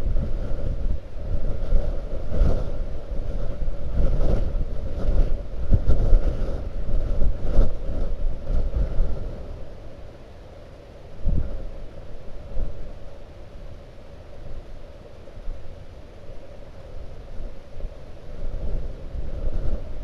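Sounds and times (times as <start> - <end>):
wind buffeting microphone: 0.0 - 9.8, 11.2 - 13.1, 17.0 - 20.0.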